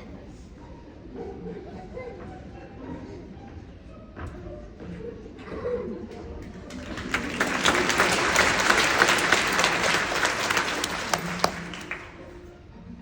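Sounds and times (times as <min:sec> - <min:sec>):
audience applauding: 0:06.5 - 0:12.4.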